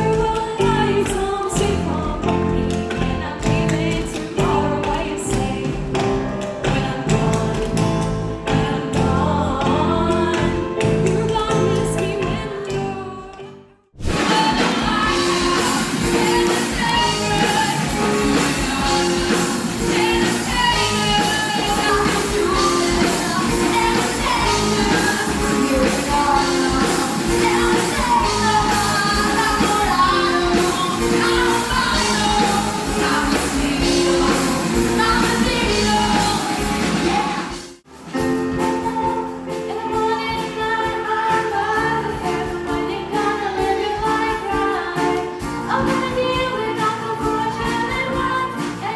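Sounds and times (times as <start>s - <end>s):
song with singing: 0.0s - 37.6s
pop-rock song with band: 0.0s - 48.9s.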